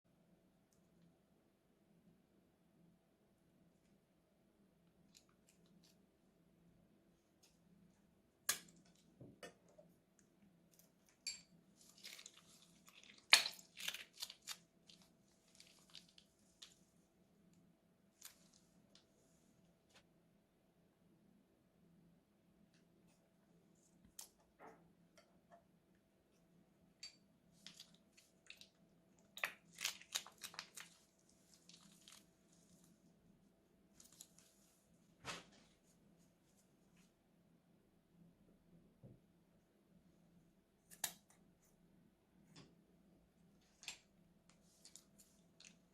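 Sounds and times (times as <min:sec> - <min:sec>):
crunchy slime crackling and popping: 0:11.8 - 0:16.8, 0:27.6 - 0:32.8.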